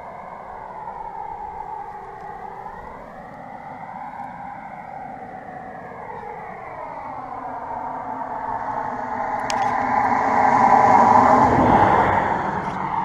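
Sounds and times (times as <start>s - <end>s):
vehicle engine passing: 5.5s - 13.0s.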